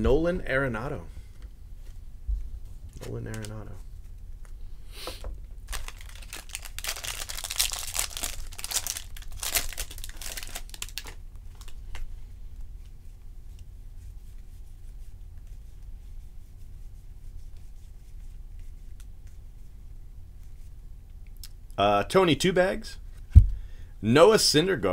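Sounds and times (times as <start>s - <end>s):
plastic wrapper tearing and crinkling: 5.7s - 12.0s.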